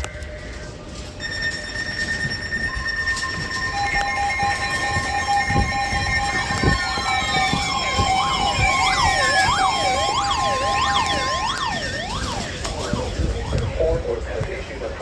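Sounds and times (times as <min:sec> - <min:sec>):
sirens wailing: 0:00.0 - 0:15.0
two-tone alert tone: 0:01.2 - 0:13.7.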